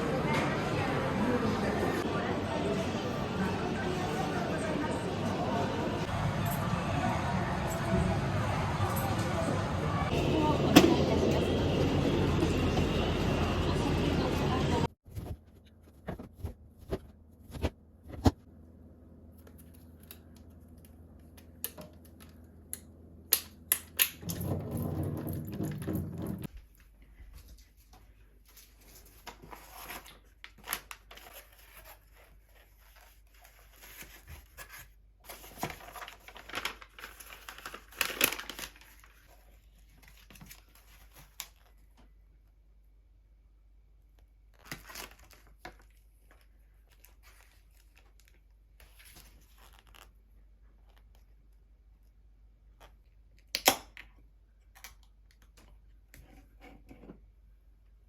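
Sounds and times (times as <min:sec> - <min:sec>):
packaging tearing and crinkling: 0:35.3 - 0:39.2, 0:44.6 - 0:45.9.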